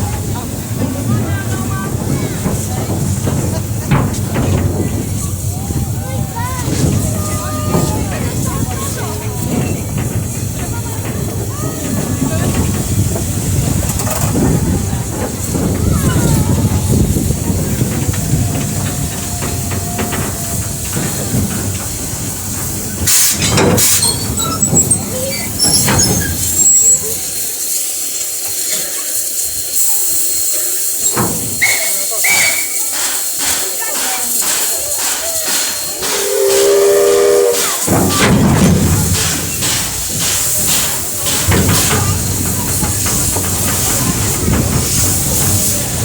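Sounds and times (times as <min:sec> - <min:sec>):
loud steam blasts: 0:00.0 - 0:46.0
steam locomotive hissing: 0:00.0 - 0:46.0
steam locomotive whistle chord: 0:36.1 - 0:37.9.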